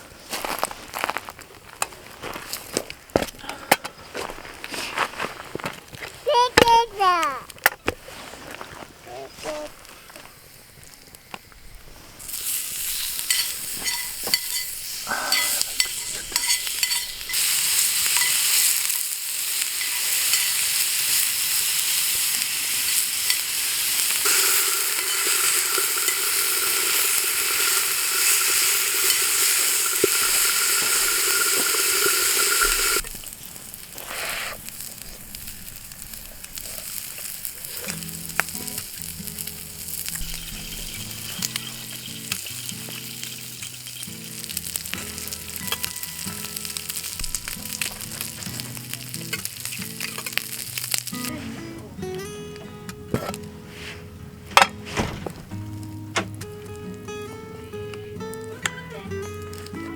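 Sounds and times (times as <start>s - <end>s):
food sizzling in a frying pan: 10.1s - 51.4s, 55.5s - 59.9s.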